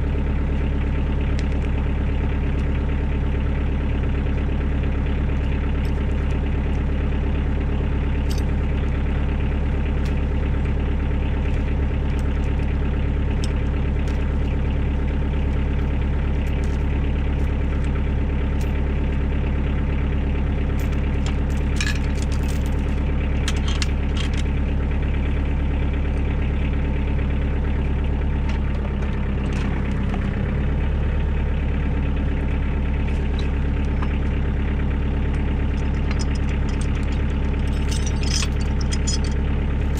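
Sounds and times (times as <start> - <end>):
tractor diesel engine running: 0.0 - 39.9
light clicks and rattles: 20.8 - 24.6, 35.3 - 39.9.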